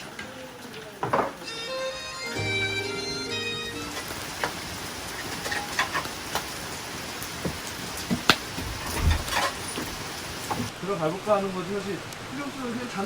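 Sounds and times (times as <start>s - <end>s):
background music: 1.4s - 4.7s
rain falling: 2.2s - 13.0s.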